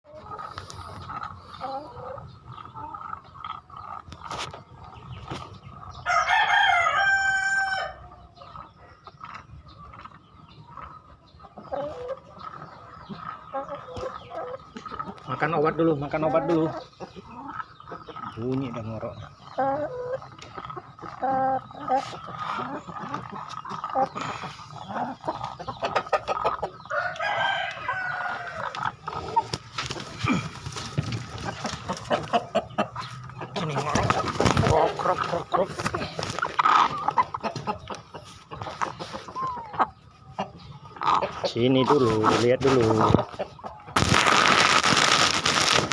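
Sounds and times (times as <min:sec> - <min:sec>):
chickens clucking: 0:00.0 - 0:45.9
rooster crowing: 0:06.0 - 0:08.0, 0:26.9 - 0:28.8.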